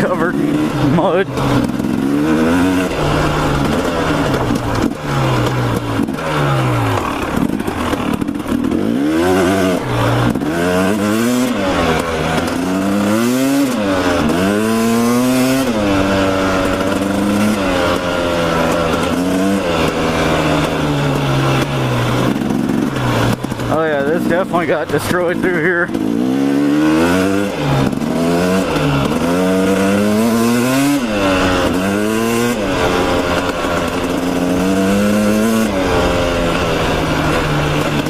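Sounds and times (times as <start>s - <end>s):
dirt bike engine revving: 0.0s - 38.0s
wind and road noise: 0.0s - 38.0s.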